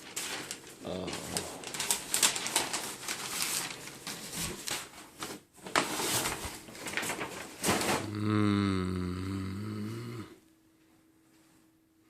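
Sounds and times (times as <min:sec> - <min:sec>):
packaging rustling and crinkling: 0:00.0 - 0:08.1
man humming low: 0:00.8 - 0:01.5, 0:07.9 - 0:10.5.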